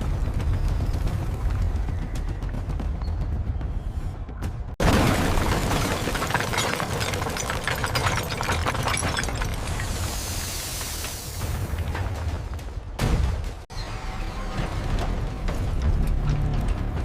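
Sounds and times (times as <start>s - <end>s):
crash of shattering debris: 4.8s - 12.4s.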